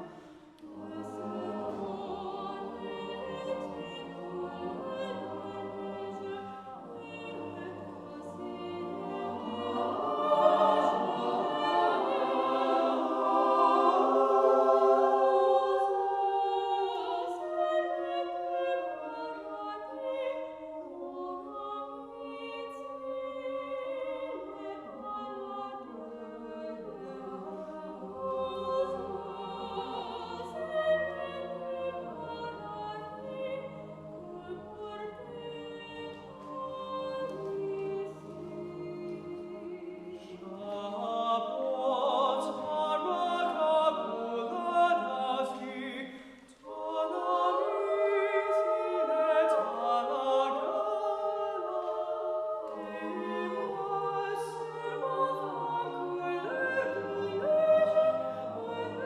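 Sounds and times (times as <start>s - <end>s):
choir singing chords: 0.0s - 59.0s.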